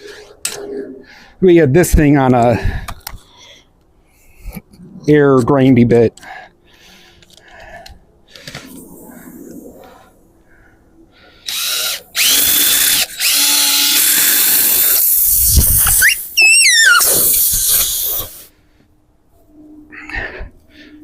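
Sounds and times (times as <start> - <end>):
power drill whining: 11.4 - 18.4.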